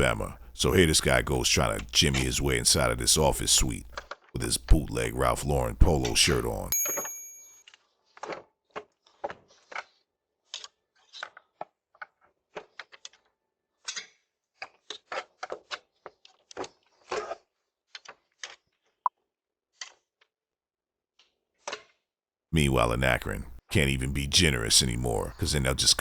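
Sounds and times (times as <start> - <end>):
short beep: 6.7 - 7.5.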